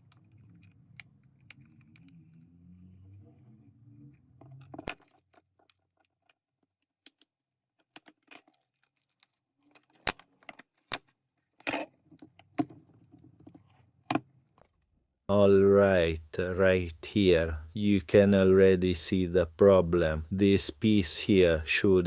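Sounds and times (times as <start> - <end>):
plastic parts clicking and tapping: 4.5 - 14.8.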